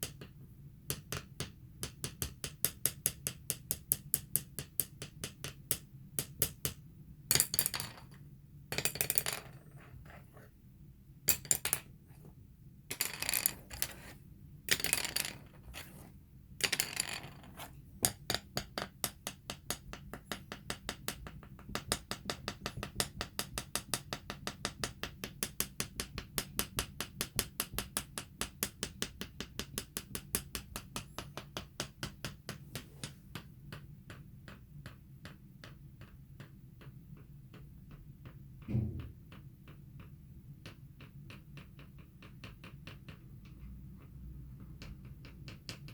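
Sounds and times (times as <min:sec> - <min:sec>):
scraping on a floor: 0:15.1 - 0:16.2.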